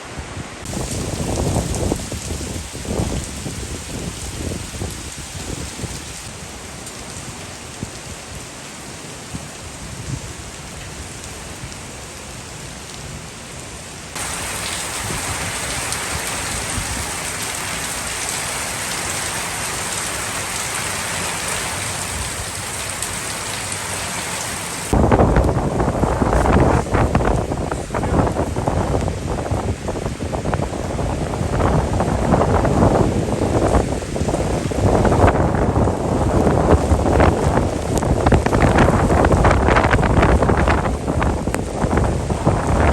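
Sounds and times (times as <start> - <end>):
heavy rain pouring: 0.0 - 42.9
wind buffeting microphone: 0.2 - 6.3, 14.2 - 18.3, 24.9 - 42.9.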